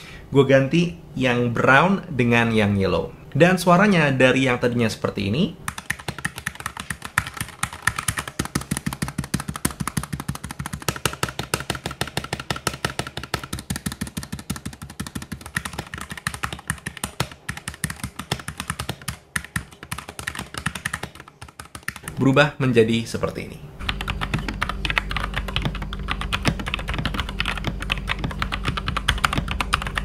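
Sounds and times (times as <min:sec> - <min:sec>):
rapid mechanical keyboard typing: 0:05.7 - 0:22.4, 0:23.8 - 0:30.0.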